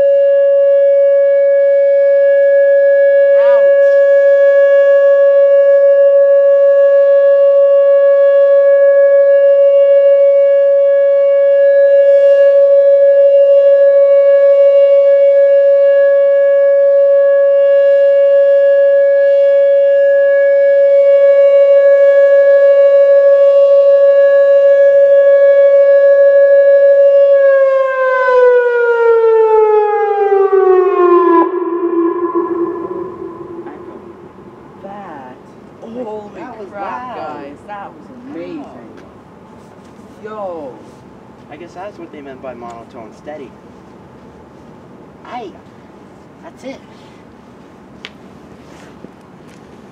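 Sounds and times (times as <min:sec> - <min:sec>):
outdoor warning siren monotone: 0:00.0 - 0:39.5.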